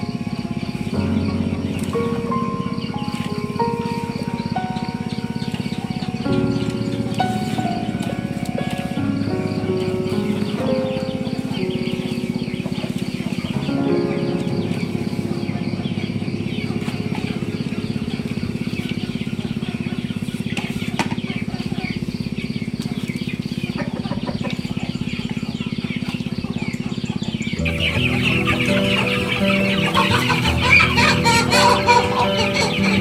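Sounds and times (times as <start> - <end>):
background music: 0.0 - 20.1, 27.5 - 33.0
chickens clucking: 0.0 - 33.0.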